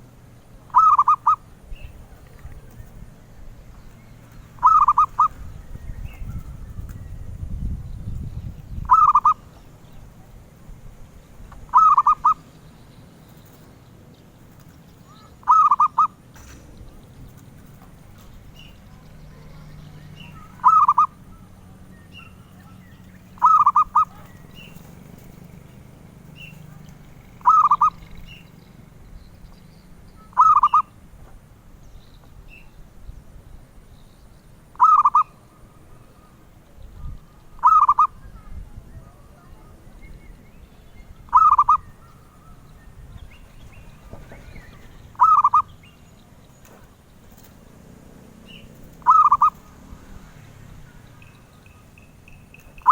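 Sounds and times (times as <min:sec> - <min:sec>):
dove cooing: 0:00.7 - 0:03.2, 0:04.2 - 0:06.9, 0:08.8 - 0:10.3, 0:11.6 - 0:12.5, 0:14.4 - 0:16.2, 0:20.2 - 0:28.6, 0:30.2 - 0:31.0, 0:34.8 - 0:36.5, 0:37.4 - 0:38.4, 0:41.3 - 0:42.8, 0:43.8 - 0:45.8, 0:46.7 - 0:52.9.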